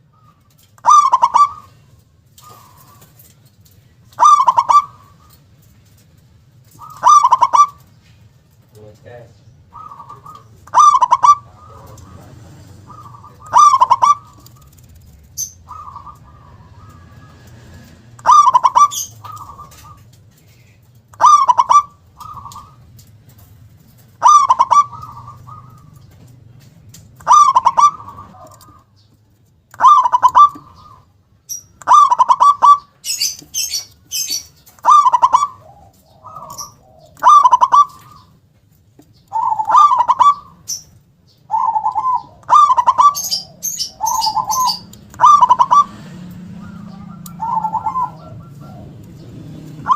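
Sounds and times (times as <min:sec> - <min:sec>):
dove stuttering cooing song: 0:00.0 - 0:49.9
bird high chirps: 0:09.4 - 0:20.1, 0:21.2 - 0:23.0, 0:24.2 - 0:26.2, 0:29.8 - 0:38.4, 0:39.1 - 0:46.0, 0:46.6 - 0:49.9.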